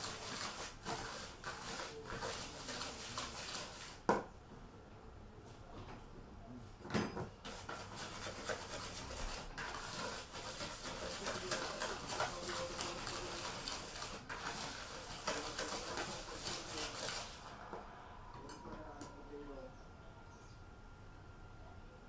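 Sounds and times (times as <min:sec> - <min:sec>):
scraping strokes in a bowl: 0:00.0 - 0:04.1, 0:07.3 - 0:19.1.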